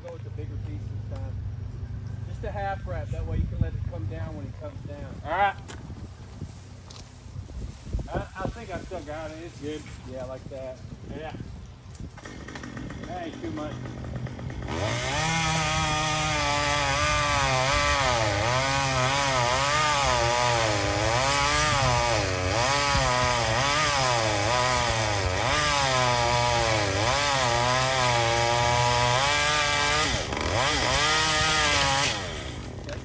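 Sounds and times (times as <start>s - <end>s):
chainsaw cutting wood: 12.0s - 33.0s.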